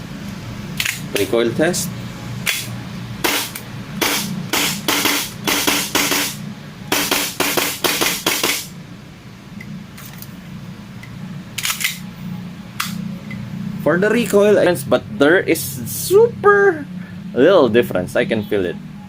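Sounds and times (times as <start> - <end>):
airsoft pistol shots: 2.4 - 8.7.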